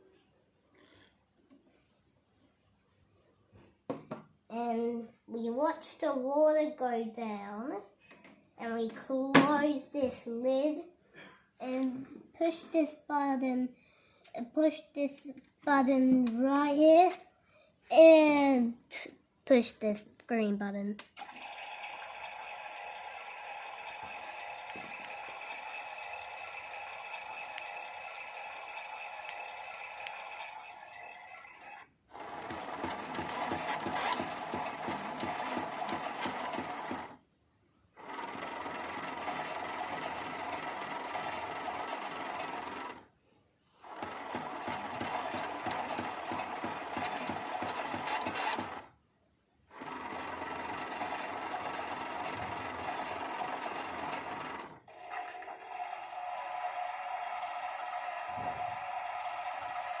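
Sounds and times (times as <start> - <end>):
toy washing machine drum turning: 21.2 - 37.2, 38.0 - 43.0, 43.8 - 48.9, 49.8 - 60.0.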